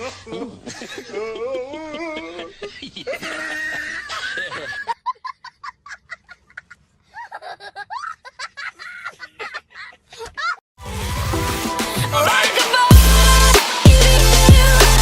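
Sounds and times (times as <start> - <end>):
high-pitched laughter: 0.0 - 10.6.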